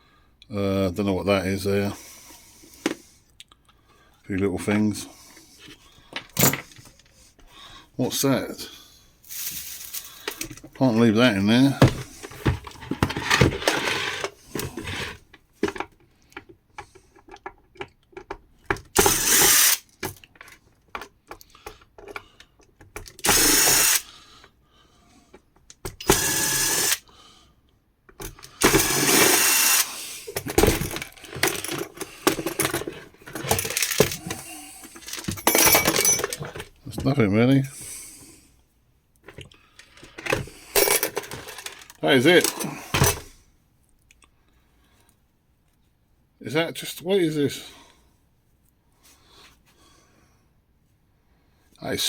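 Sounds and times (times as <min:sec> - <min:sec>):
clicks and knocks of parts: 0:06.1 - 0:07.2, 0:09.6 - 0:10.8, 0:11.8 - 0:24.6, 0:28.0 - 0:37.2, 0:39.2 - 0:43.3
power drill running: 0:19.0 - 0:19.8, 0:23.2 - 0:24.1, 0:26.0 - 0:27.1, 0:28.6 - 0:30.1.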